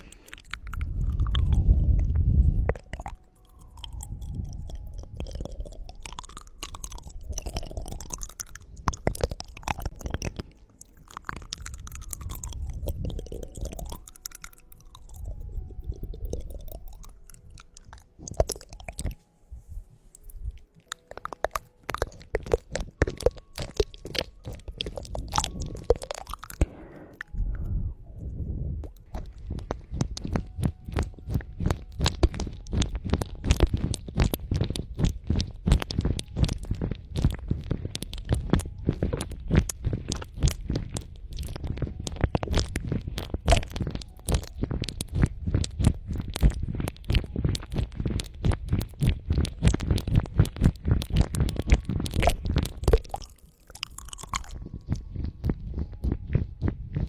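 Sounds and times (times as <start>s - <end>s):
wet tongue and lip clicks: 0.0s - 19.2s, 20.1s - 57.0s
low muffled rumbles: 0.6s - 3.0s, 24.4s - 53.1s.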